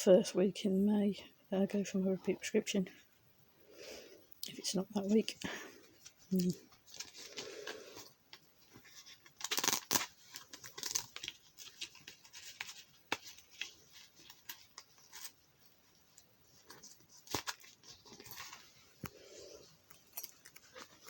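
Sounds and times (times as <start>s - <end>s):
packaging rustling and crinkling: 5.0s - 21.0s.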